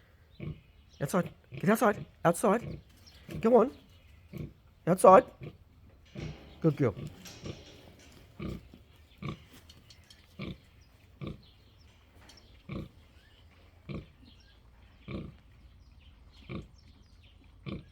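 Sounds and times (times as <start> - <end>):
pig grunting: 0.3 - 9.6, 10.4 - 11.6, 12.7 - 13.0, 13.8 - 14.4, 15.0 - 15.4, 17.6 - 17.9.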